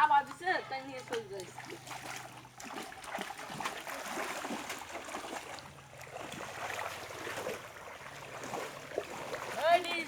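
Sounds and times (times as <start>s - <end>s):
pond water splashing: 0.0s - 10.0s.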